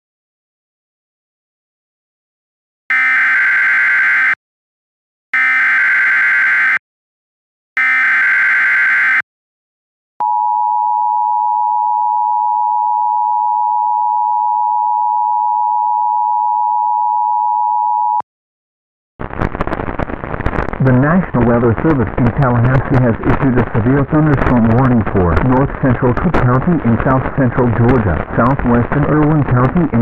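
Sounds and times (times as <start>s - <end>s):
buzzing data bursts: 5.4s - 6.8s, 7.8s - 9.2s.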